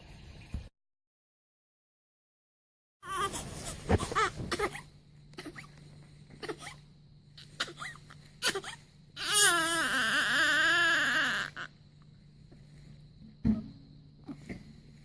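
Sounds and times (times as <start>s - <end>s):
baby crying: 3.0s - 3.4s, 4.0s - 5.6s, 7.4s - 11.7s
faint low hum: 3.1s - 15.0s.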